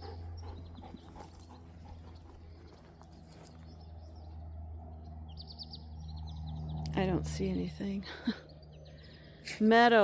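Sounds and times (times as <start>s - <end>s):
bird chirps: 0.0s - 7.6s
footsteps in grass: 0.6s - 4.5s.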